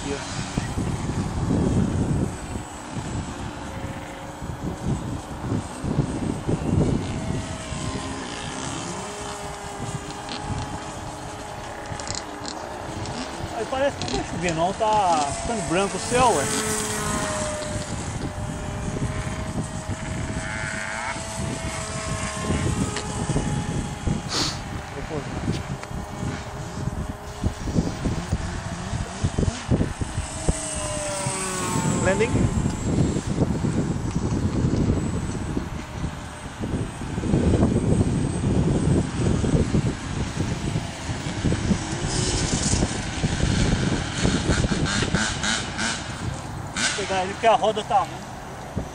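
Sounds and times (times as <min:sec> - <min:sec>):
model airplane motor whine: 0:00.0 - 0:48.9
wind buffeting microphone: 0:00.0 - 0:48.9.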